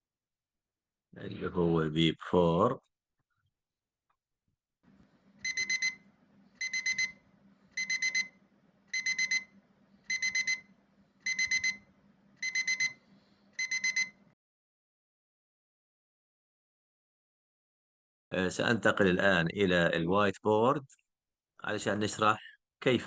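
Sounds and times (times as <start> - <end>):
alarm clock beeping: 5.4 - 6.0, 6.6 - 7.2, 7.8 - 13.0, 13.6 - 14.2.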